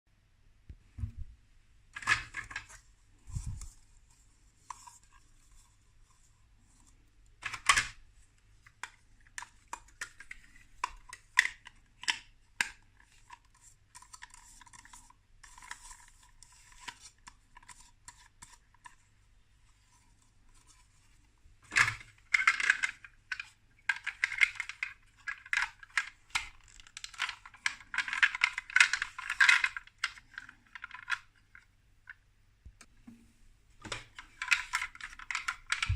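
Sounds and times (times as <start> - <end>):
plastic blocks clicking: 7.4 - 8.0, 21.6 - 32.2, 33.8 - 35.9.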